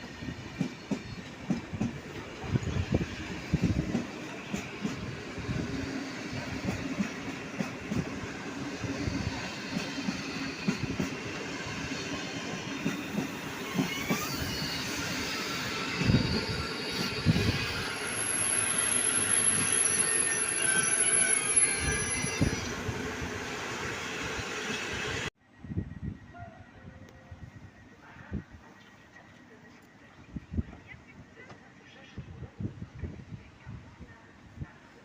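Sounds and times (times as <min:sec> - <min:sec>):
wheels squealing on rails: 0:00.0 - 0:25.3.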